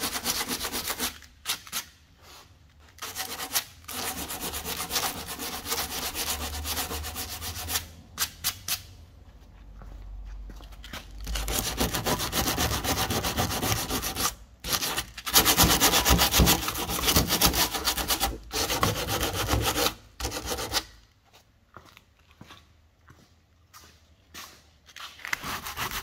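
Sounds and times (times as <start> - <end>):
sandpaper rubbing: 0.0 - 8.8, 11.2 - 20.9, 25.2 - 26.0.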